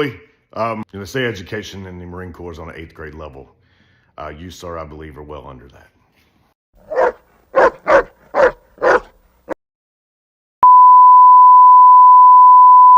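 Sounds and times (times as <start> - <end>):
dog barking: 6.8 - 9.2
steady beep tone: 10.6 - 12.9.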